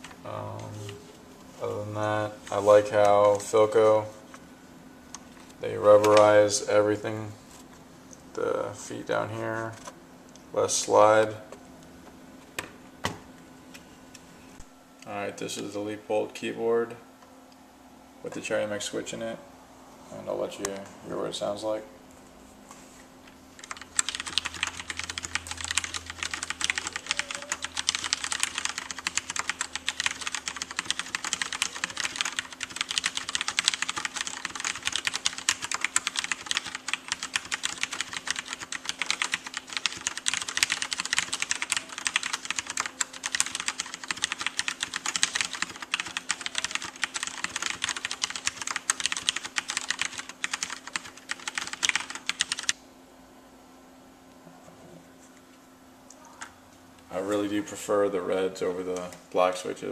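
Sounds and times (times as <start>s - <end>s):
fast typing on mechanical keyboard: 23.6s - 52.7s.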